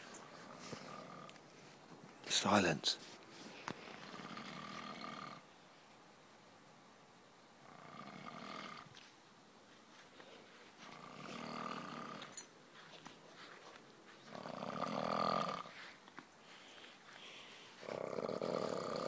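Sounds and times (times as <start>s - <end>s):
man snoring: 0.8s - 1.3s, 4.0s - 5.4s, 7.6s - 8.9s, 10.9s - 12.3s, 14.4s - 15.7s, 17.8s - 19.0s.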